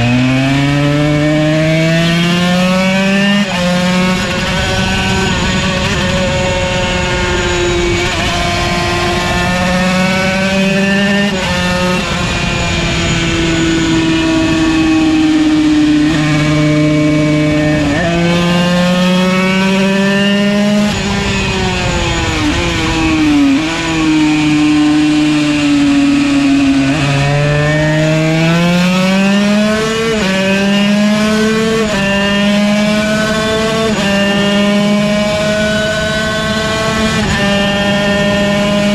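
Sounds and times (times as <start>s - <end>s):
two-stroke racing engine accelerating: 0.0s - 38.9s.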